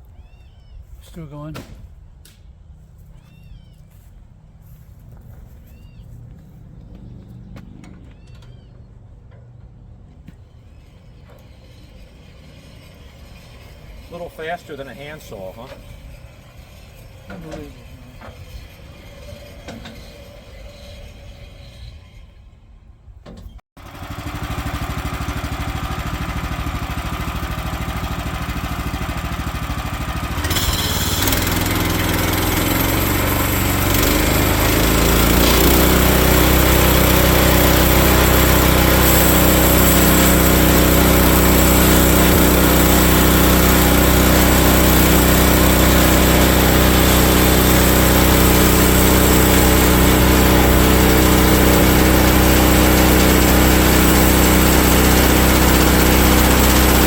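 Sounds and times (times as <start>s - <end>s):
small gasoline engine running: 10.5s - 22.6s, 23.8s - 57.0s.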